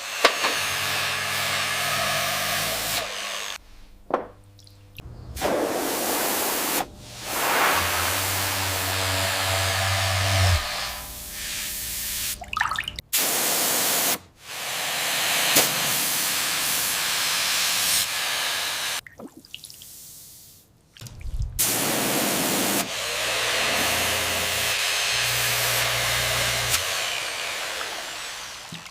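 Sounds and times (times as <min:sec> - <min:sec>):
hissing spray: 0:05.4 - 0:09.5, 0:13.2 - 0:19.0, 0:21.6 - 0:28.9.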